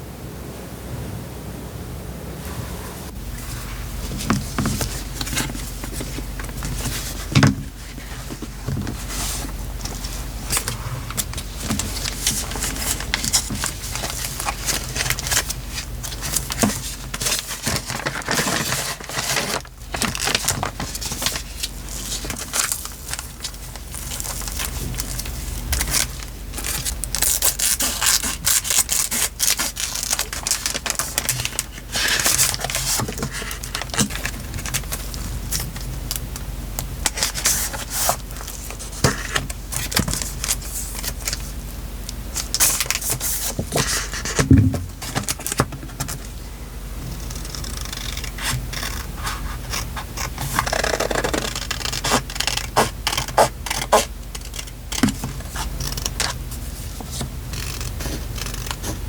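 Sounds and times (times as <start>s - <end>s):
paper crinkling and rustling: 3.3s - 46.4s, 47.0s - 59.0s
knock: 44.4s - 45.0s.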